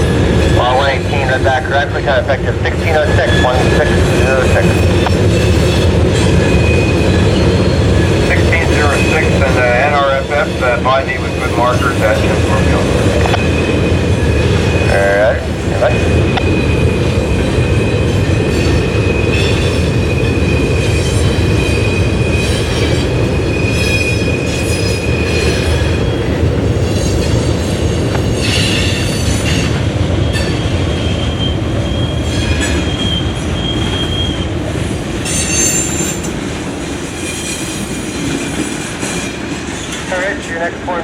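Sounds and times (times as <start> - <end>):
freight train rumbling past: 0.0 - 41.0
train wheels squealing: 3.2 - 10.5, 15.6 - 36.4, 37.1 - 40.1.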